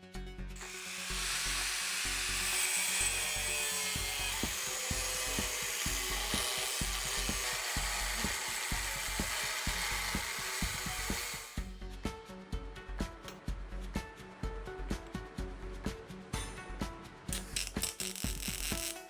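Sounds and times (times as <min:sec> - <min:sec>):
power tool grinding: 0:00.6 - 0:11.6, 0:17.3 - 0:19.0
background music with beat: 0:04.0 - 0:19.0.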